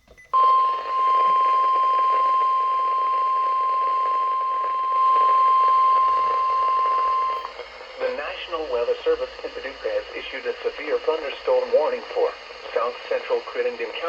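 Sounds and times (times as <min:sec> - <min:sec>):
radio hiss: 0:00.4 - 0:14.0.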